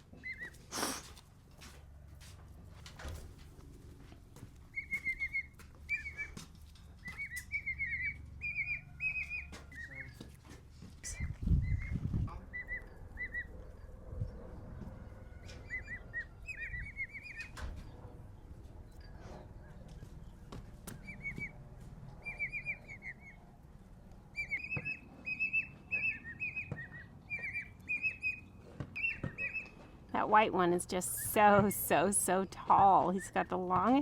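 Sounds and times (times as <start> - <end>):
chicks peeping: 4.7 - 10.4, 11.2 - 13.8, 15.4 - 18.0, 20.9 - 21.6, 22.2 - 23.4, 24.3 - 29.8.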